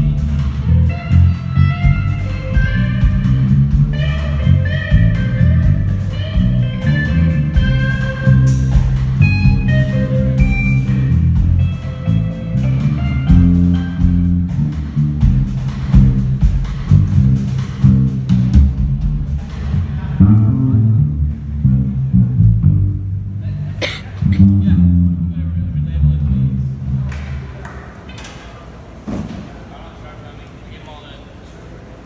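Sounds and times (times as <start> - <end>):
electric guitar: 0.0 - 16.4
rock band playing: 0.0 - 24.9.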